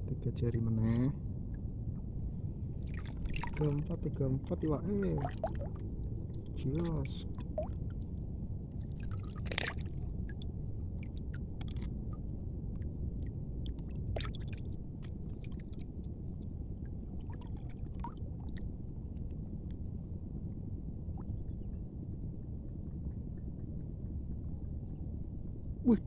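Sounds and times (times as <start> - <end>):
steady low rumble: 0.0 - 26.0
shallow water sloshing: 2.7 - 8.2, 8.8 - 10.4, 13.7 - 18.7
water splashes: 2.8 - 5.8, 6.6 - 7.8, 8.9 - 10.0, 14.1 - 15.8.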